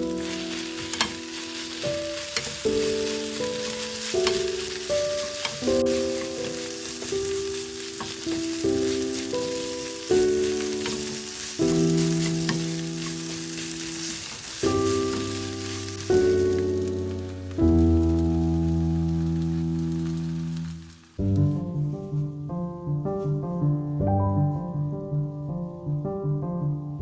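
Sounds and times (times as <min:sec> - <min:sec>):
spatula scraping a pan: 0:00.0 - 0:16.0
rice sizzling in a frying pan: 0:00.0 - 0:22.3
music with sustained chords: 0:00.0 - 0:23.3.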